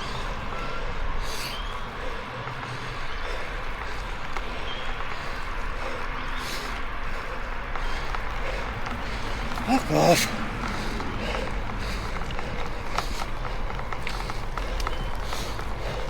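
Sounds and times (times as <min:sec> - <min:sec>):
cyclist breathing heavily: 0:00.0 - 0:16.0
wind and riding rumble: 0:00.0 - 0:16.0.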